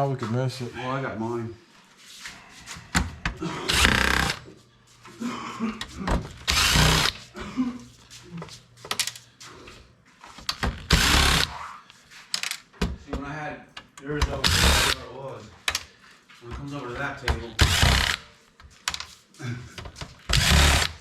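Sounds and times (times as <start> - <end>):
power drill bursts: 3.7 - 4.4, 6.4 - 7.2, 10.8 - 11.6, 14.4 - 15.0, 17.6 - 18.3, 20.3 - 21.0.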